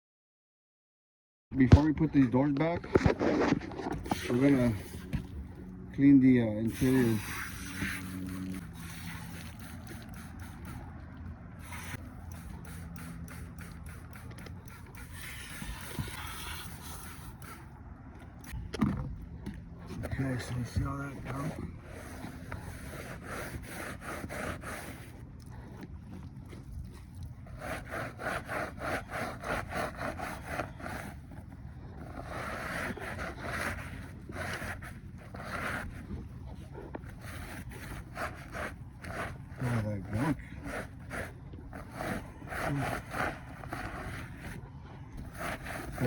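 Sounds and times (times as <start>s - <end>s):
steady low hum: 1.6s - 46.0s
rag scrubbing sheet metal: 6.6s - 10.8s, 37.1s - 44.6s.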